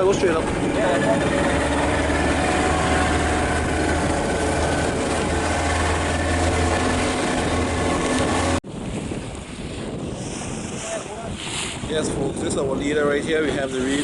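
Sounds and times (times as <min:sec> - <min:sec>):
motorboat engine running: 0:00.0 - 0:10.8
water wash: 0:00.0 - 0:14.0
wind noise on microphone: 0:00.0 - 0:14.0.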